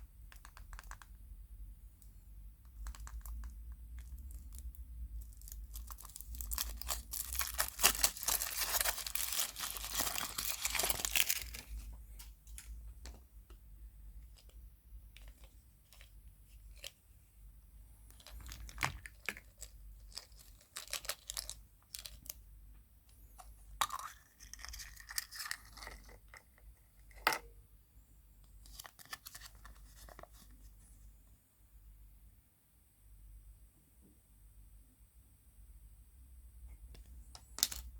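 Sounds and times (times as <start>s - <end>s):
foil wrapper crinkling: 4.0s - 11.9s, 18.1s - 22.4s.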